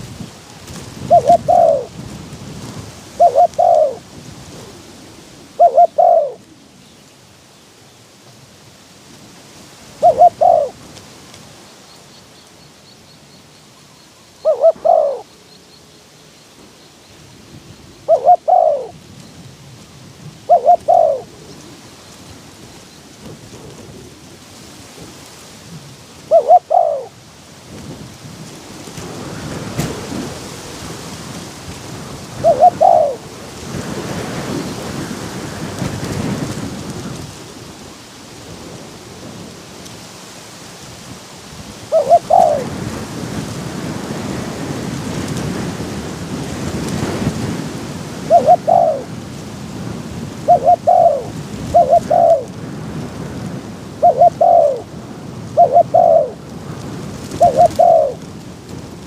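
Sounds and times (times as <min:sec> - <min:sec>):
wind buffeting microphone: 0:00.0 - 0:06.8, 0:17.2 - 0:40.1, 0:40.8 - 0:59.0
doves cooing: 0:01.0 - 0:02.0, 0:03.2 - 0:06.6, 0:10.0 - 0:10.8, 0:14.4 - 0:15.3, 0:18.0 - 0:19.0, 0:20.4 - 0:21.9, 0:26.2 - 0:27.2, 0:32.3 - 0:33.3, 0:41.9 - 0:42.8, 0:48.2 - 0:49.2, 0:50.4 - 0:52.5, 0:54.0 - 0:54.9, 0:55.6 - 0:56.4, 0:57.3 - 0:58.3.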